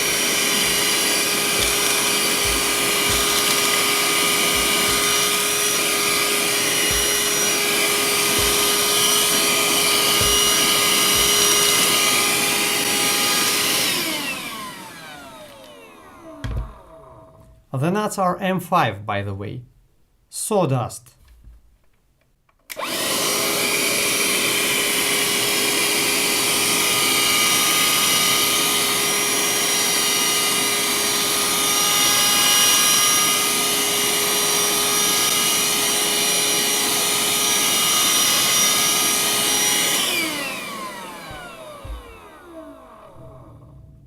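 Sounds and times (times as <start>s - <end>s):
handheld vacuum motor whine: 0.0s - 17.5s, 22.7s - 44.0s.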